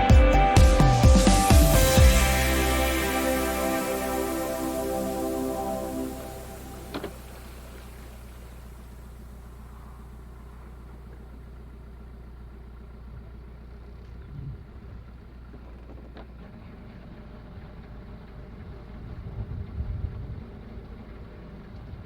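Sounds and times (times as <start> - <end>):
boat diesel engine humming: 0.0 - 13.7.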